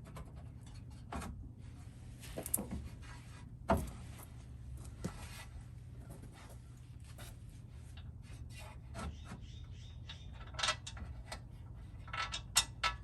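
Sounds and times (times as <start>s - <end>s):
steady low hum: 0.0s - 13.0s
metal hardware scraping and clicking: 10.0s - 13.0s.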